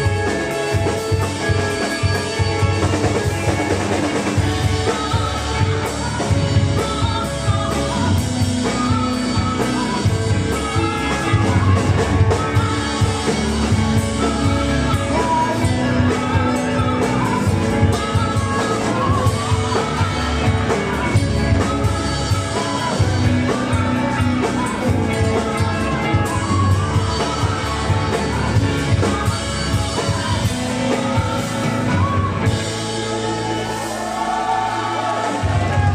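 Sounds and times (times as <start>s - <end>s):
lead vocal singing: 0.0s - 35.9s
rock band playing live: 0.0s - 35.9s.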